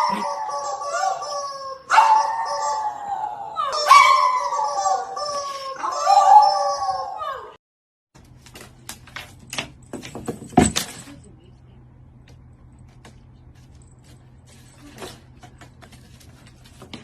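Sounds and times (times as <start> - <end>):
dog howling: 0.0 - 7.6.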